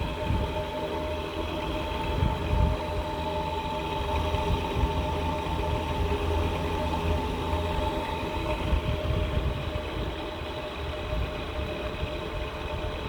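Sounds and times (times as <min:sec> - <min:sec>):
small fan motor whine: 0:00.0 - 0:13.0
uneven low hum: 0:00.0 - 0:13.0.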